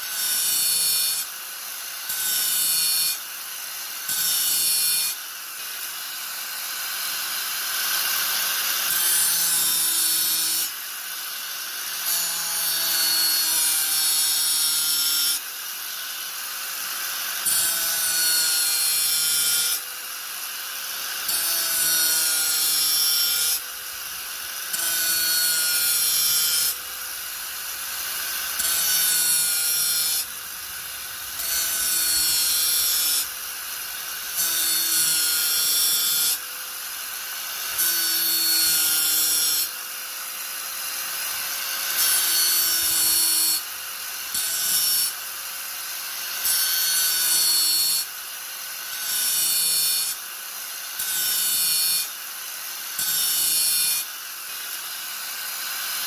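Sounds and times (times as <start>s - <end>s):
angle grinder whining: 17.0s - 39.7s.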